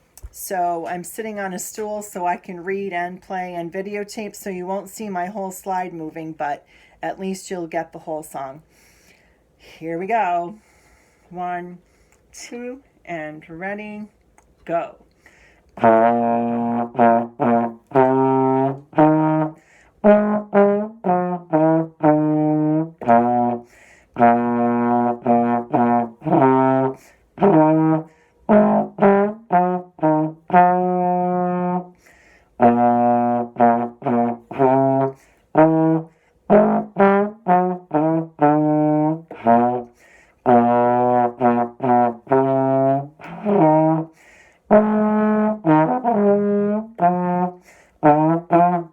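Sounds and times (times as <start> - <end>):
solo trombone melody: 15.8 - 48.9.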